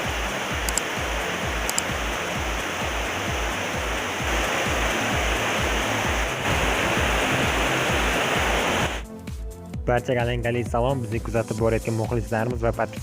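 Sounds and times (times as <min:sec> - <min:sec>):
waterfall rushing: 0:00.0 - 0:09.0
background music with low beat: 0:00.0 - 0:13.0.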